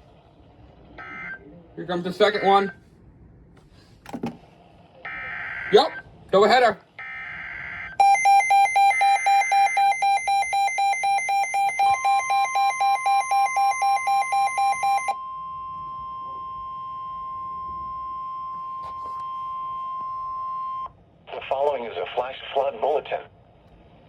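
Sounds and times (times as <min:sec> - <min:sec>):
rapid alarm beeping: 0:07.0 - 0:20.8
steady warning alarm tone: 0:07.0 - 0:20.9.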